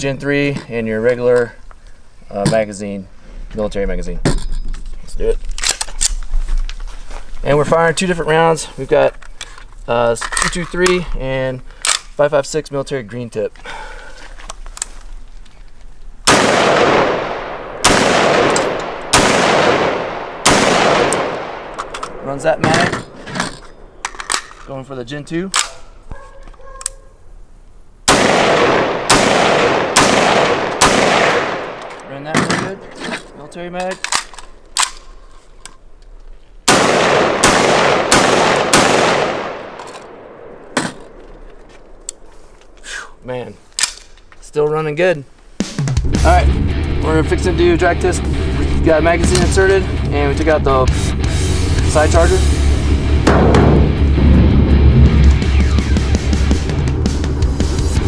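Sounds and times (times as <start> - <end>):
rifle shots echoing: 16.2 - 24.4, 28.1 - 32.9, 36.6 - 41.2, 53.2 - 54.3.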